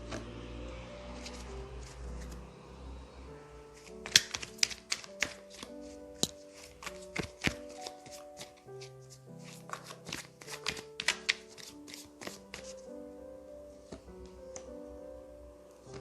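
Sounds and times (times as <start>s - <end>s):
soft piano music: 0.0s - 16.0s
cards being shuffled: 3.8s - 12.8s.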